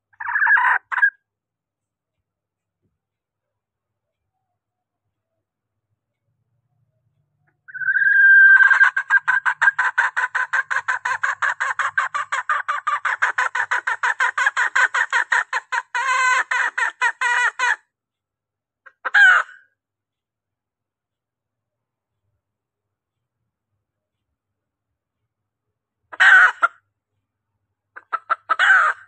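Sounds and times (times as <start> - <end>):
junglefowl clucking call: 0.1 - 1.2, 7.7 - 17.8, 18.9 - 19.6, 26.1 - 26.8, 28.0 - 29.0.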